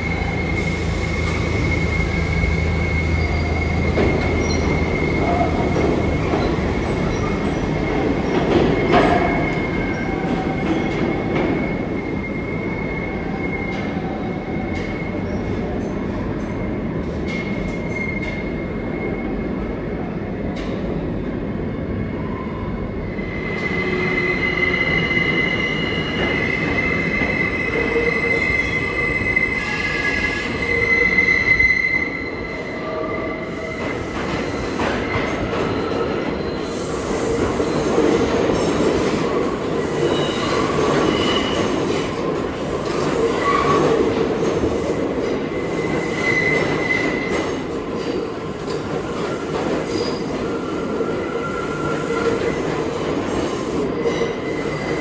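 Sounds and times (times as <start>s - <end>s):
steel wheels squealing on rails: 0.0s - 20.0s, 21.9s - 55.0s
subway train rumbling: 0.0s - 55.0s.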